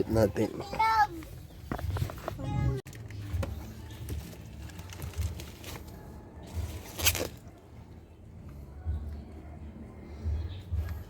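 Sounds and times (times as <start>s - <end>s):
rustling and crinkling: 0.4s - 7.6s.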